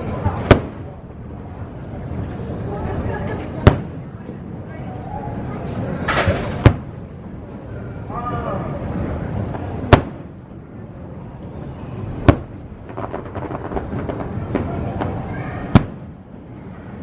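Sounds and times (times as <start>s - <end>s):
fireworks bangs: 0.0s - 1.4s, 3.3s - 4.5s, 6.0s - 7.3s, 8.8s - 17.0s
fireworks crackling: 0.0s - 4.7s, 5.4s - 7.7s, 8.7s - 17.0s.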